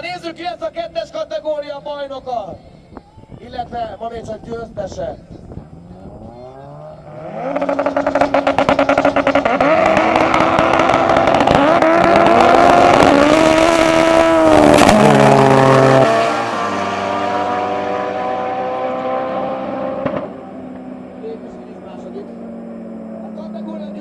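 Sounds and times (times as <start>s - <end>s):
rev-limited engine stuttering: 5.3s - 24.0s
drag car engine accelerating: 5.7s - 24.0s
sharp exhaust crack: 7.3s - 17.6s.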